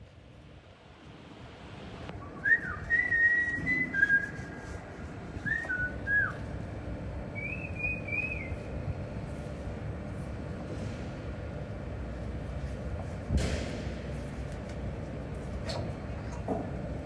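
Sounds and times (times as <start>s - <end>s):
person whistling: 2.4s - 4.8s, 5.5s - 6.4s.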